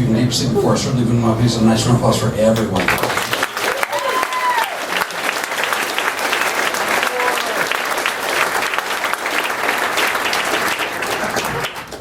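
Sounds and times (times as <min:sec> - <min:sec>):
audience applauding: 0:02.6 - 0:12.0.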